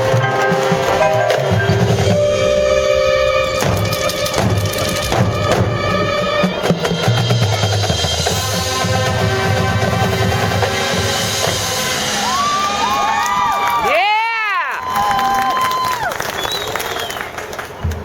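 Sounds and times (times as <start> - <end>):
marching drums: 1.1 - 9.8.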